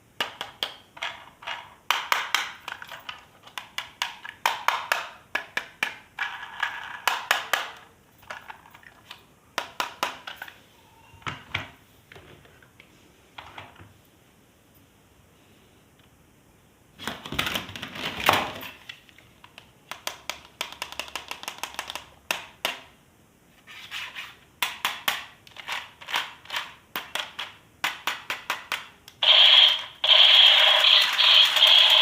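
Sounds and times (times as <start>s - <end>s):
plastic clicks and taps: 19.4s - 22.8s.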